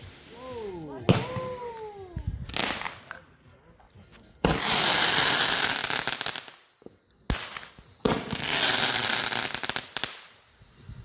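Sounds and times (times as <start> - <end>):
fireworks crackling hiss: 0.0 - 11.0
firework bang: 1.1 - 3.2, 4.4 - 6.5, 7.3 - 10.2.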